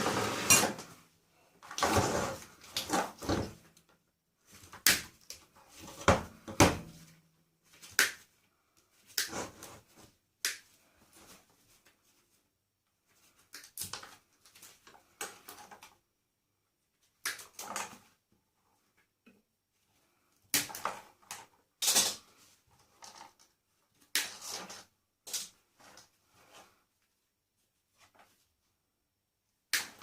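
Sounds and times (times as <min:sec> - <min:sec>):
clattering and scraping of parts: 0:00.0 - 0:01.0.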